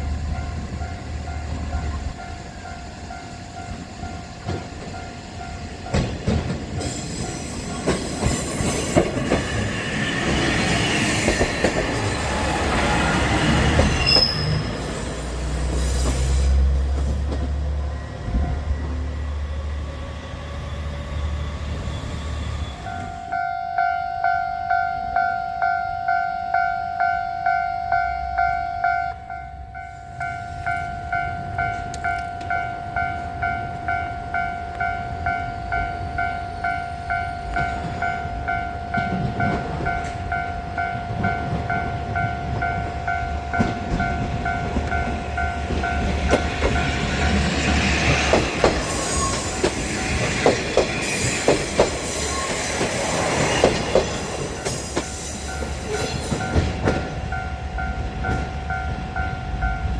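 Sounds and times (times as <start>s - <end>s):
train wheels clacking on rails: 0.3s - 17.6s, 37.5s - 59.9s.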